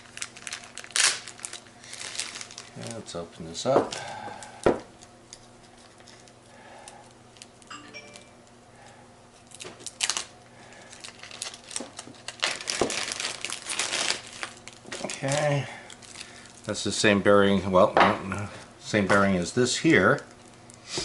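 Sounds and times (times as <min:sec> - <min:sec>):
packaging crinkling and tearing: 0:00.0 - 0:03.2, 0:09.4 - 0:16.8.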